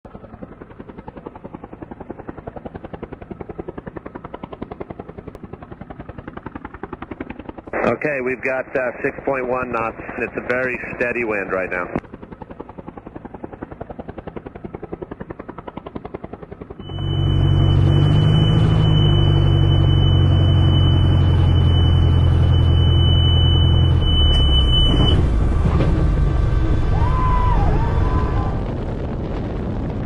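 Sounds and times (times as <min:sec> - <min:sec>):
low engine drone: 0:07.6 - 0:12.1, 0:15.7 - 0:30.0
thin high whine: 0:16.8 - 0:25.4.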